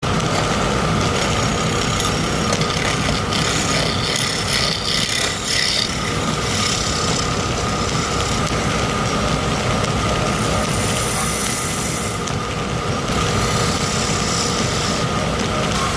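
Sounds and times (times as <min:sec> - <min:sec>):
wood lathe whining: 0:00.1 - 0:09.2, 0:10.3 - 0:15.9
turning tool scraping wood: 0:01.2 - 0:08.5, 0:13.3 - 0:15.1.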